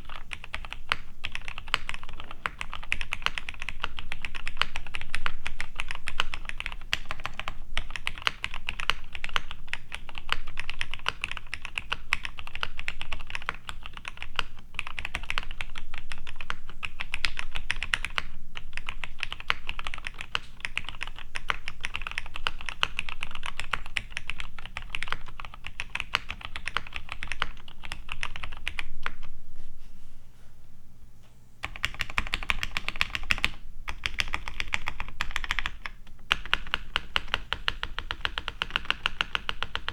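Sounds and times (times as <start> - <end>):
fast typing on mechanical keyboard: 0.0 - 29.2, 31.6 - 39.9.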